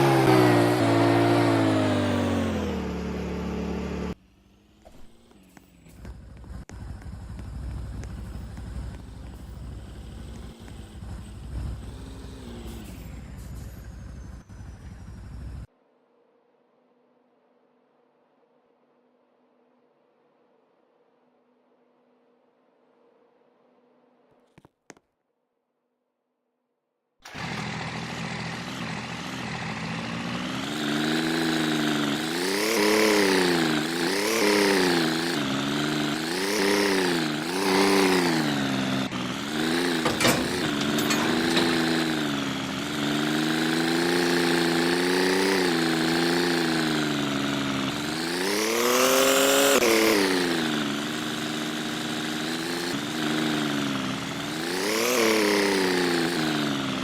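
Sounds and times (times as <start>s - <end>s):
small engine revving: 0.0s - 15.7s, 27.2s - 57.0s.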